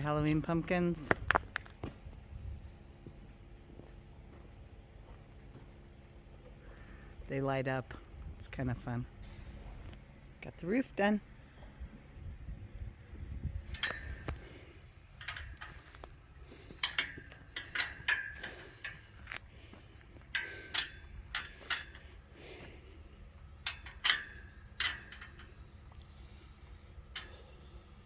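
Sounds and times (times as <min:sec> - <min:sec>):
metal frame parts clicking and clinking: 0:13.6 - 0:28.0.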